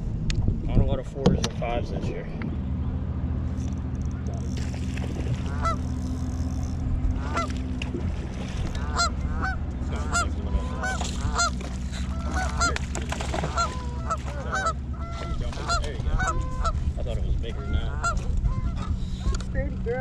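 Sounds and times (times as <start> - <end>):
low motor hum: 0.0 - 20.0
geese honking: 5.4 - 5.9, 7.2 - 7.6, 8.8 - 19.4.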